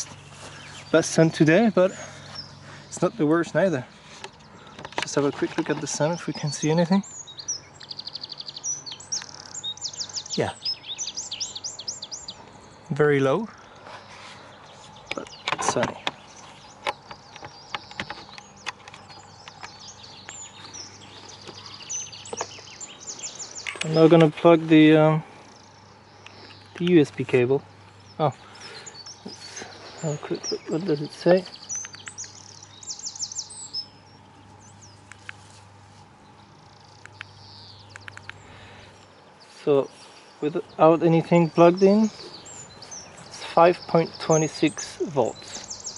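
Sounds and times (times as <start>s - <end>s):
birds chirping and trilling: 0.0s - 45.9s
songbird singing: 0.0s - 45.9s
light clicks: 31.8s - 32.4s, 35.0s - 35.4s, 36.9s - 38.4s.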